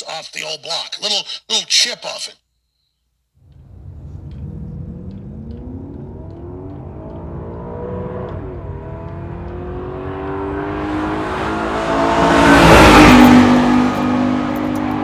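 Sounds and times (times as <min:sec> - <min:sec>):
car engine accelerating: 0:03.4 - 0:15.0.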